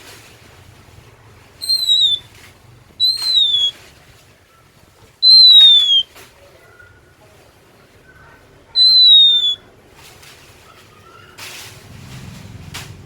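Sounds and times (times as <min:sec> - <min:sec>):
bird singing whistled notes: 0:01.6 - 0:02.3, 0:03.0 - 0:03.8, 0:05.2 - 0:06.1, 0:08.8 - 0:09.6.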